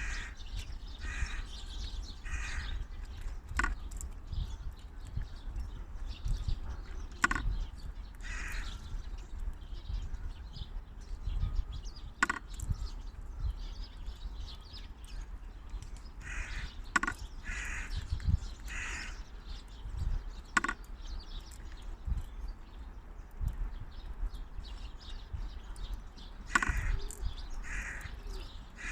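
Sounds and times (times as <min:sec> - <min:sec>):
squirrel feeder clacks: 0:02.3 - 0:05.3, 0:07.0 - 0:08.6, 0:12.2 - 0:12.8, 0:15.8 - 0:19.0, 0:20.4 - 0:21.8, 0:26.5 - 0:28.1.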